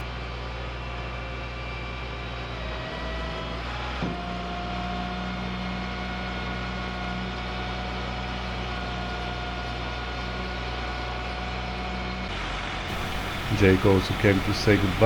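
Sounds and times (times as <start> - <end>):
steady high whine: 12.9 - 15.0
vehicle engine idling: 12.9 - 15.0.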